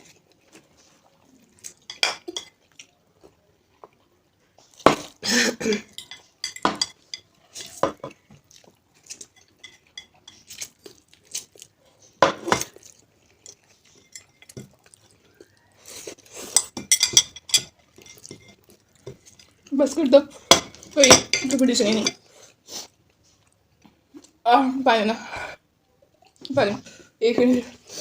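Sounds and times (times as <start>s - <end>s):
utensils clinking against dishes: 5.6s - 7.8s, 9.3s - 10.6s, 13.4s - 14.7s, 16.5s - 19.5s, 20.5s - 22.2s.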